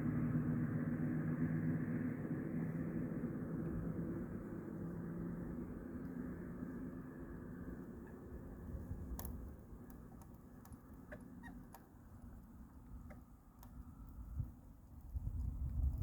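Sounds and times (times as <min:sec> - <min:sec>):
light clicks and taps: 0:09.0 - 0:16.0.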